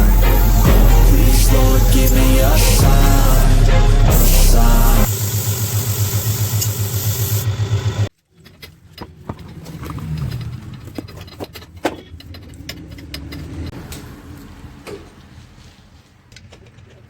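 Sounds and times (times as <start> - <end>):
low hum: 0.0 - 5.2.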